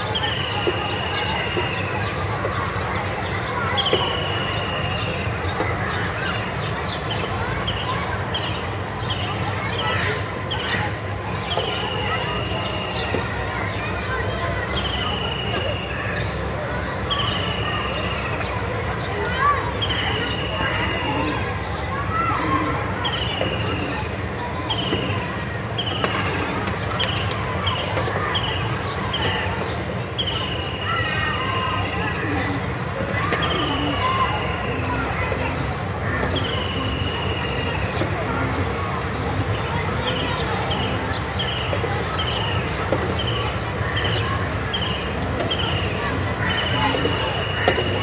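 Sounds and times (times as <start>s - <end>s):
children playing and calling: 0.0s - 48.0s.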